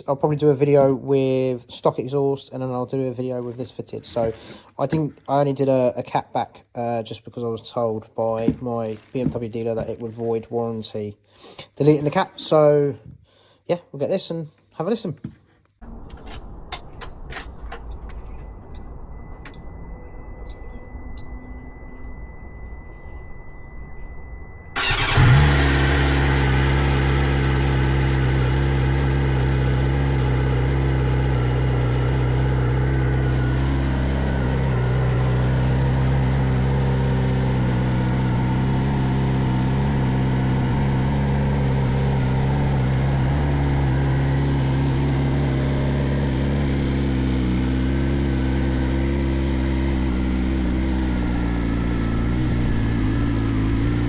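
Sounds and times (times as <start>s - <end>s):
motorcycle engine idling: 24.8s - 54.0s.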